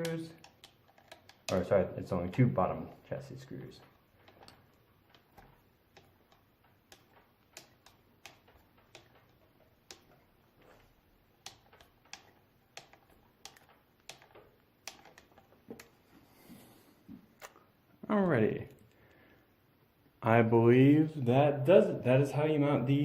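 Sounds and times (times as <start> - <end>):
screwdriver clicks: 0.0 - 1.7, 4.3 - 10.8, 11.4 - 15.9.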